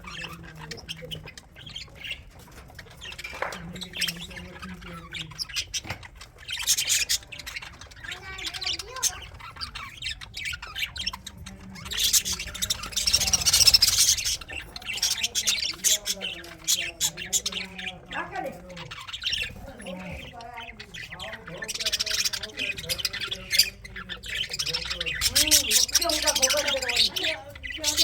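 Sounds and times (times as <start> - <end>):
budgies chattering and squawking: 0.0 - 28.0.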